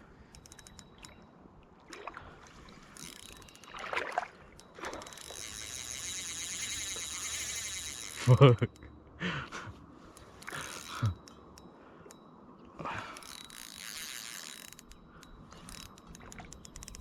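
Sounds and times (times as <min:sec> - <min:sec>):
fishing reel clicking and whirring: 0:00.3 - 0:01.2, 0:02.9 - 0:03.9, 0:04.6 - 0:09.0, 0:10.1 - 0:12.2, 0:13.0 - 0:17.0.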